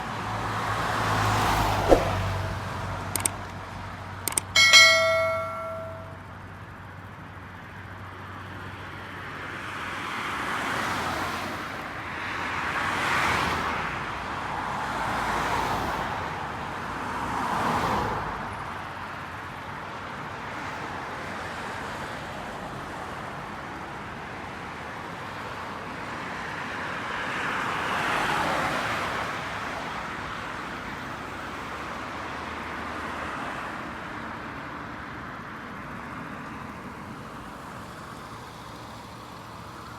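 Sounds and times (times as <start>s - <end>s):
steady road hum: 0.0s - 39.9s
vehicles passing by: 0.0s - 39.9s
sharp clicks: 3.2s - 3.6s, 4.3s - 4.8s
short metallic ring: 4.3s - 6.2s.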